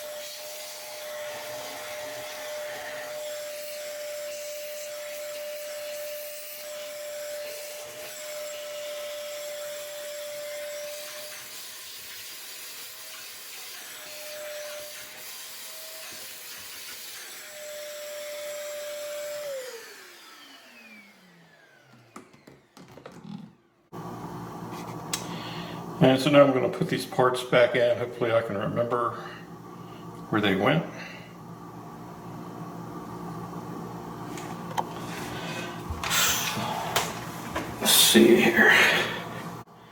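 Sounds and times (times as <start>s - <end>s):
shop vac whining: 0.0s - 39.9s
vacuum motor winding down: 18.0s - 24.4s.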